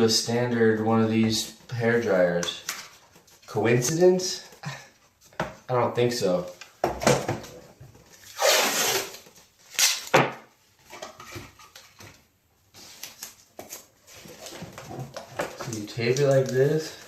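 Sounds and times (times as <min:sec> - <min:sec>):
handling cardboard and plastic: 0:00.0 - 0:05.7, 0:06.3 - 0:17.0
tape tearing: 0:08.1 - 0:10.3
tape ripping off roll: 0:08.2 - 0:10.4.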